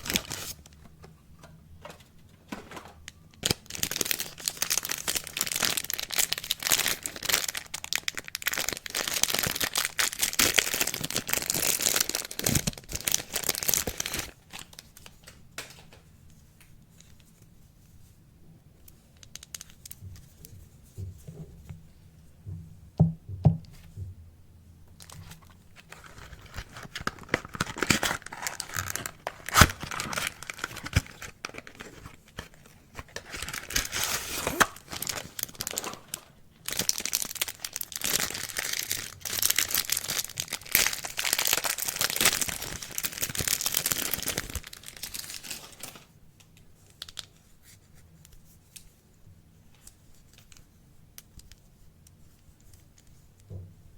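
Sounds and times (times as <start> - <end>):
packaging crinkling: 0.0 - 0.8, 1.8 - 16.0, 19.1 - 20.3, 25.0 - 47.3.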